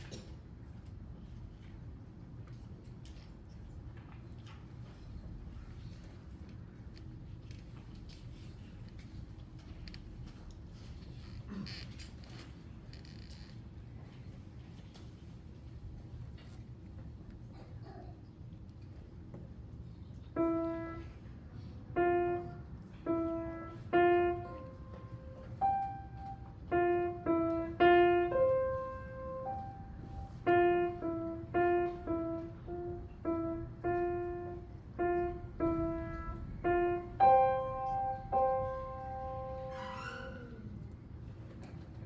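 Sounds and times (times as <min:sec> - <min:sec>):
piano melody: 0:20.4 - 0:39.8.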